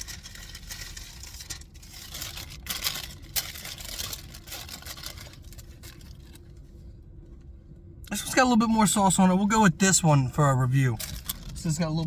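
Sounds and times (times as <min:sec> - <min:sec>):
sandwich wrapper crinkling: 0:00.0 - 0:06.7, 0:10.7 - 0:12.0.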